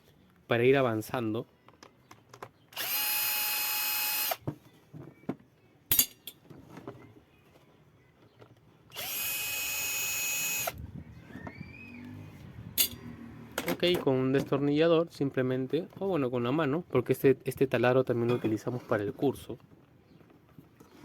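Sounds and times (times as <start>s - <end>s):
electric drill whine: 2.8s - 4.4s, 8.9s - 10.8s.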